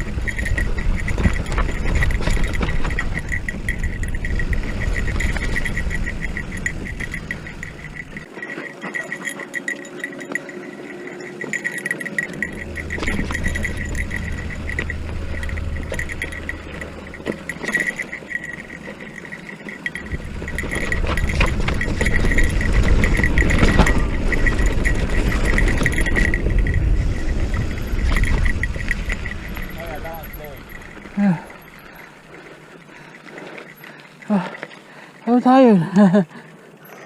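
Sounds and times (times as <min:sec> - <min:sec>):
wind rumbling on microphone: 0:00.0 - 0:08.3, 0:20.0 - 0:31.9
bike rattling over bumps: 0:00.0 - 0:36.2.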